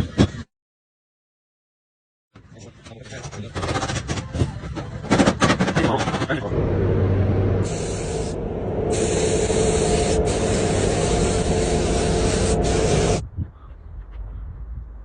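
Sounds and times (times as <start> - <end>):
paint spray gun hissing: 7.6 - 13.2.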